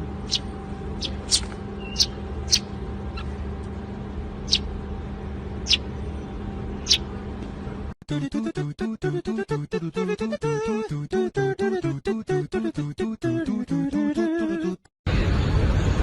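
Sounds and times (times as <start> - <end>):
steady low hum: 0.0 - 8.0
bird chirping: 0.2 - 3.3, 4.4 - 4.7, 5.6 - 7.1.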